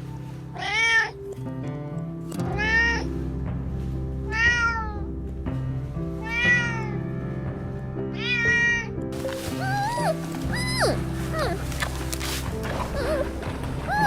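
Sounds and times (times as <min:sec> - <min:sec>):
background music: 0:00.0 - 0:14.0
cat meowing: 0:00.6 - 0:01.2, 0:04.3 - 0:05.1, 0:06.2 - 0:07.0, 0:08.2 - 0:08.9.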